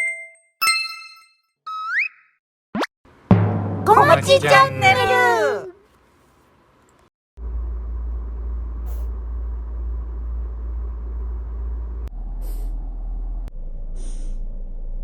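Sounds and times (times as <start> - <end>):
loud steady low rumble: 7.4 - 15.0.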